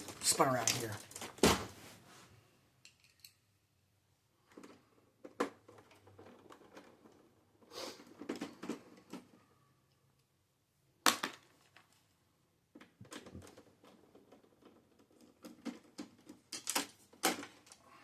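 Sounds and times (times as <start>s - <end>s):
plastic parts scraping and clicking: 0.0s - 1.4s, 4.4s - 10.3s, 12.7s - 18.0s.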